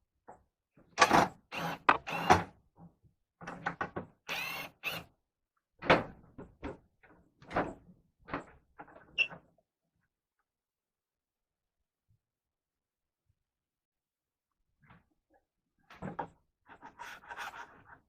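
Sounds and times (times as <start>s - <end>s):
wooden parts knocking and thumping: 1.8s - 2.4s.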